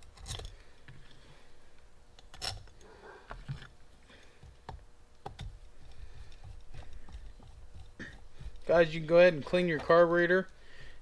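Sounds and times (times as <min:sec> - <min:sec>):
tools and small parts clicking: 0:02.2 - 0:02.8.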